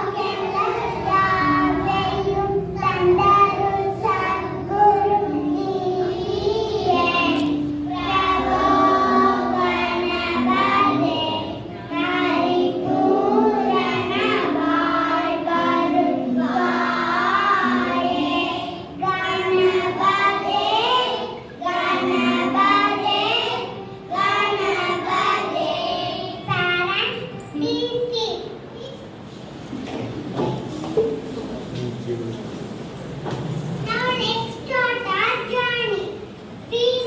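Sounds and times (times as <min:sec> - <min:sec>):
children singing: 0:00.0 - 0:26.5.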